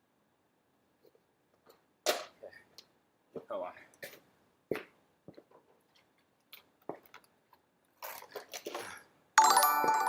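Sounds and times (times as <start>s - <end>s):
electronic alert chime: 9.4s - 10.0s.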